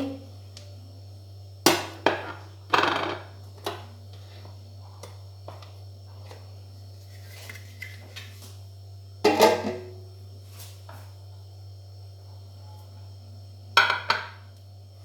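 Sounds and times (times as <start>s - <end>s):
steady low hum: 0.0s - 15.0s
dishware knocks and clinks: 13.8s - 14.4s.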